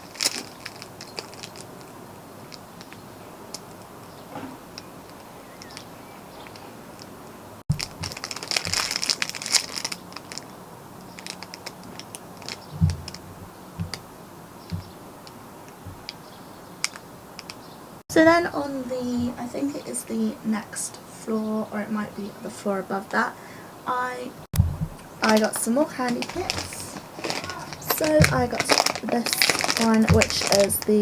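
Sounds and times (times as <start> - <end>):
plastic packaging crinkling: 0.0 - 1.9, 7.7 - 13.2, 24.9 - 31.0
soft low thumps: 12.7 - 14.1, 24.6 - 31.0.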